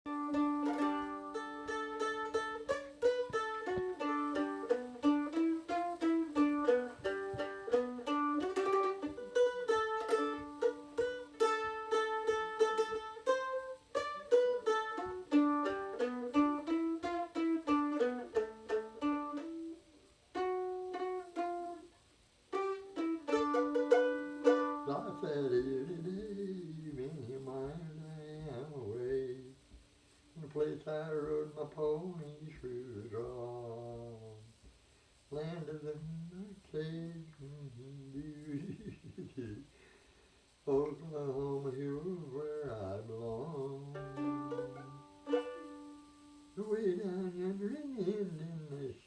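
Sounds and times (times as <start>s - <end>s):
mandolin playing country melody: 0.1s - 29.5s, 40.7s - 48.8s.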